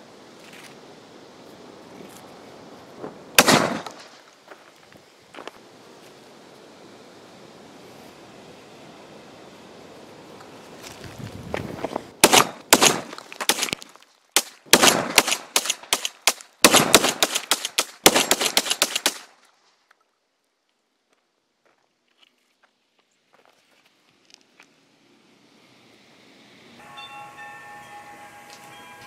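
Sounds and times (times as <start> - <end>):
cartridges cracking and popping: 3.4 - 4.3, 12.2 - 19.5.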